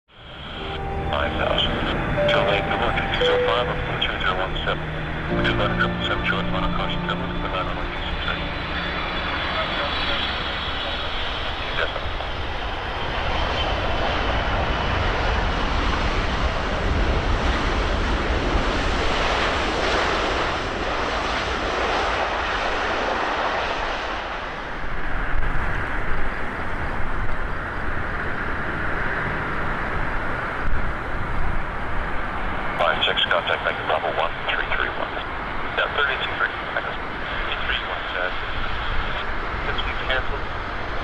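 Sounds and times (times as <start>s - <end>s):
high engine whine: 0.1s - 15.0s
jet engines roaring: 7.0s - 41.0s
gusting jet noise: 7.1s - 41.0s.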